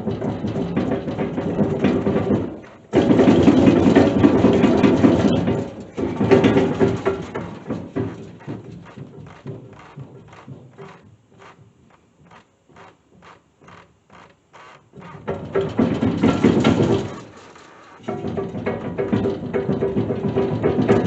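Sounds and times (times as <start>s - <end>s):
impact wrench hammering: 1.1s - 20.9s
steady motor hum: 1.3s - 15.3s.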